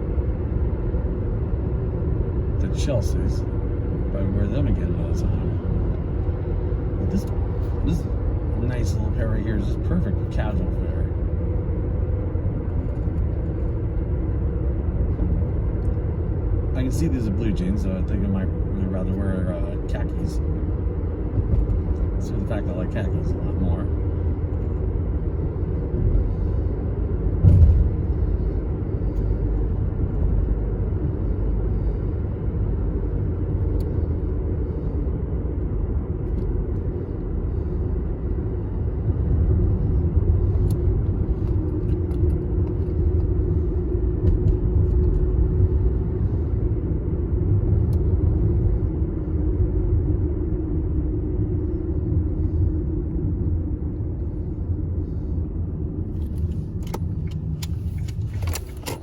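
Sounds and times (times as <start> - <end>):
car road and engine rumble: 0.0 - 59.0
thump inside car: 27.4 - 28.2.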